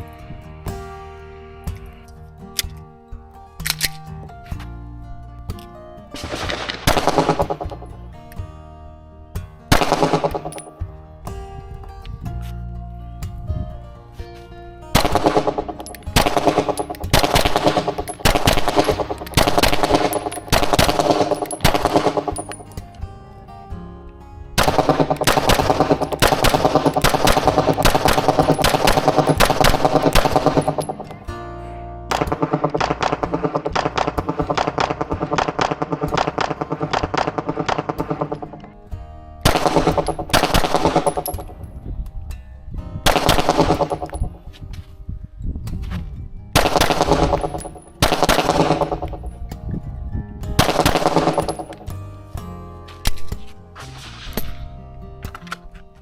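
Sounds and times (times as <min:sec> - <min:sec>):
background music: 0:00.0 - 0:56.0
pistol shots: 0:06.2 - 0:08.0, 0:09.7 - 0:10.8, 0:15.0 - 0:22.8, 0:24.6 - 0:31.2, 0:32.1 - 0:38.7, 0:39.4 - 0:41.7, 0:43.1 - 0:44.4, 0:46.6 - 0:49.4, 0:50.6 - 0:51.9.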